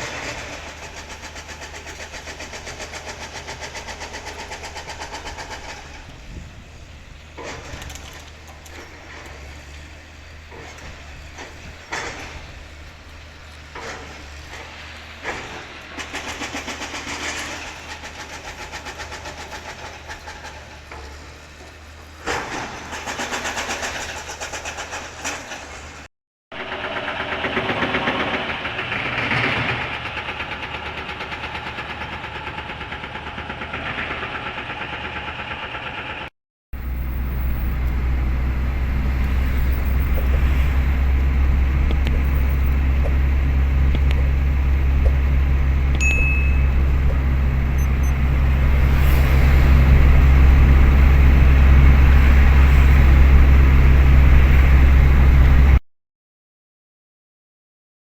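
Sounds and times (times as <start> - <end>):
heavy low engine rumble: 0.0 - 55.8
vehicle engine running: 29.8 - 55.8.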